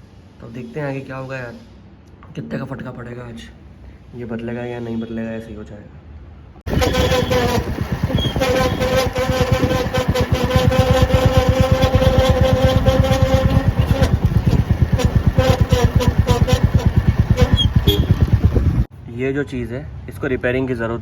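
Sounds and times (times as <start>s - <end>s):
motorcycle engine pulsing: 6.7s - 18.9s
steady whine: 6.7s - 18.9s.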